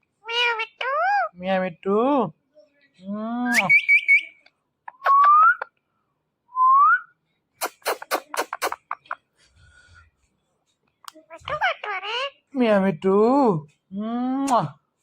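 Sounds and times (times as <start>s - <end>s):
parakeet calling: 0.2s - 1.4s, 11.3s - 12.5s.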